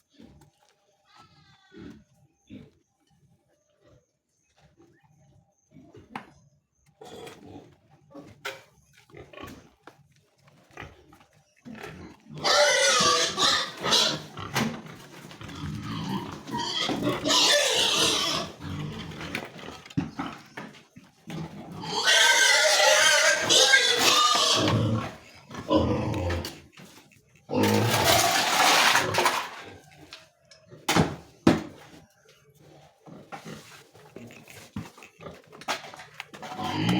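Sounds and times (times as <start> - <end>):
pigs calling loudly: 10.6 - 30.9, 32.6 - 36.9.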